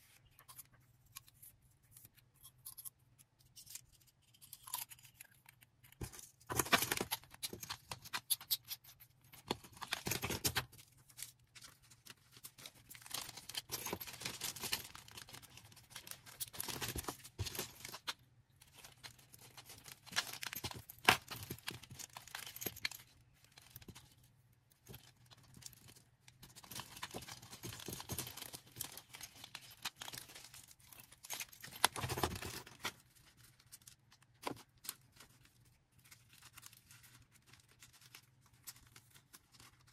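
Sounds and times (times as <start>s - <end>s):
plastic packaging rustling: 9.4s - 24.0s, 24.9s - 39.9s.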